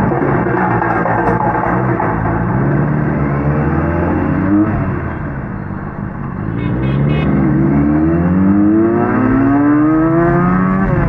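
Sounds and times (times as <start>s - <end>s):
motorcycle accelerating hard: 6.8s - 11.0s.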